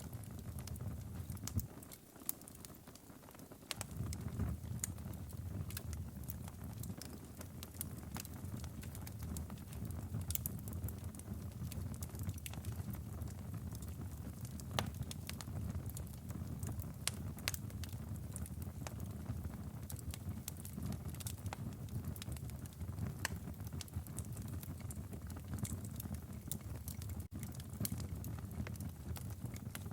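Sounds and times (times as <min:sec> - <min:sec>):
campfire crackling and popping: 0:00.0 - 0:29.9
low rumble of flames: 0:00.0 - 0:29.9.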